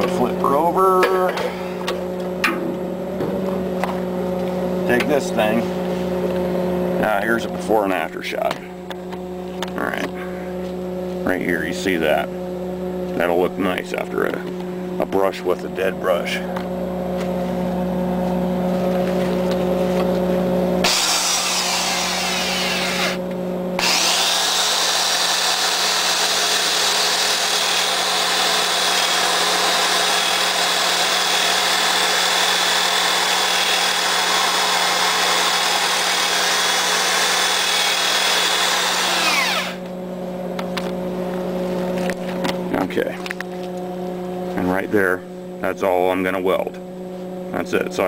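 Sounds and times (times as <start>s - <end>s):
low hum: 0.0s - 35.0s, 36.6s - 48.0s
wire brush power tool whining: 20.8s - 23.2s, 23.8s - 39.9s.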